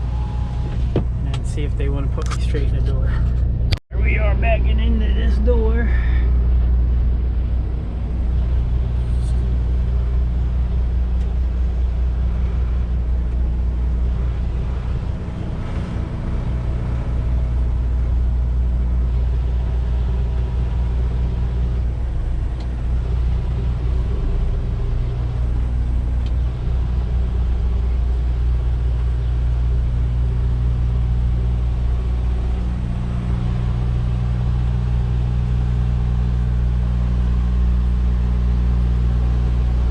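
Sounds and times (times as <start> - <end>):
diesel truck engine idling: 0.0 - 39.9.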